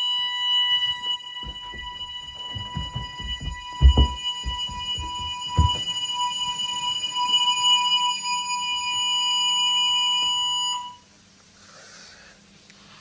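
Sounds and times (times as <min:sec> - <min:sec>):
fire alarm continuous tone: 0:00.0 - 0:11.0
low thump: 0:01.4 - 0:06.0.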